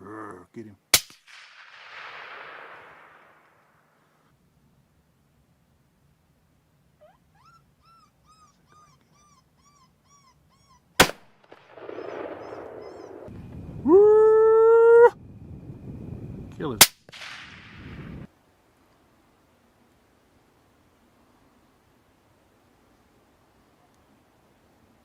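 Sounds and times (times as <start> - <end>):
rifle shot: 0.9 - 3.9, 11.0 - 13.3, 16.8 - 18.1
coyote howling: 11.9 - 15.3
short high yips: 12.0 - 13.3.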